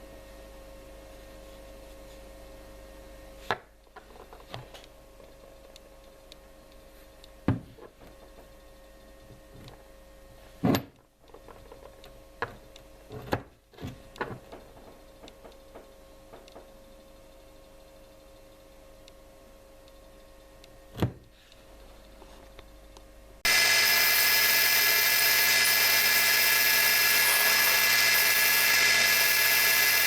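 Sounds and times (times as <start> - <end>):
milling machine electrical hum: 22.6 - 30.0.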